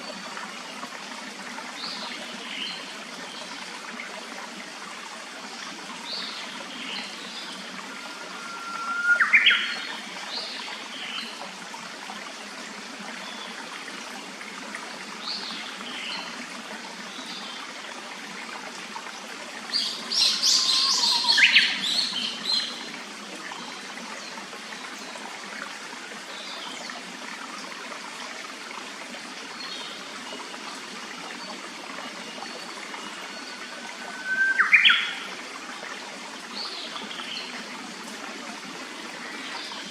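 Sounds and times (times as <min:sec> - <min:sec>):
stream running: 0:00.0 - 0:39.9
bird rising call: 0:08.0 - 0:09.7, 0:34.1 - 0:35.1.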